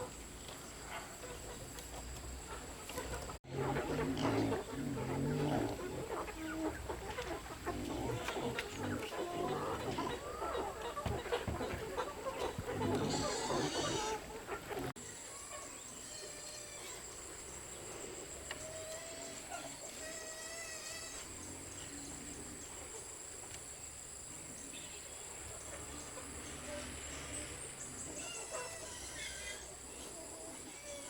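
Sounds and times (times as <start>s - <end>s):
bird calls: 0.0s - 20.2s
insects trilling: 3.5s - 14.3s, 15.0s - 31.0s.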